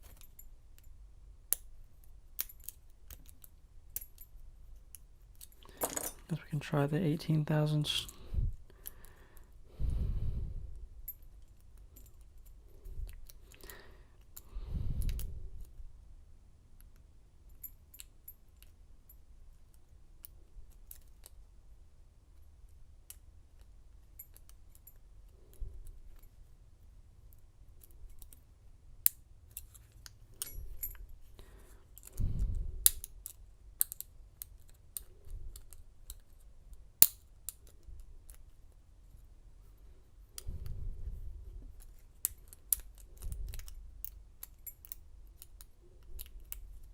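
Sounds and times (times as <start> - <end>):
handling noise: 5.6 - 6.4.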